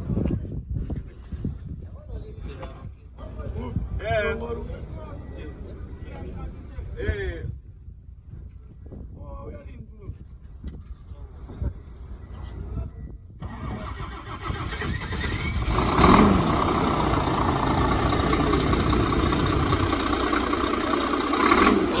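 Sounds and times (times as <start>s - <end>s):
diesel engine cranking and running: 13.4s - 22.0s.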